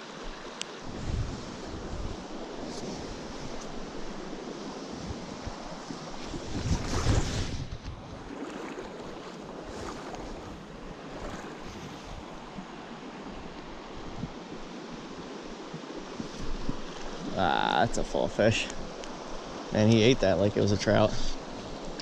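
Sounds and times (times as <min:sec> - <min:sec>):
stream water rushing: 0:00.0 - 0:22.0.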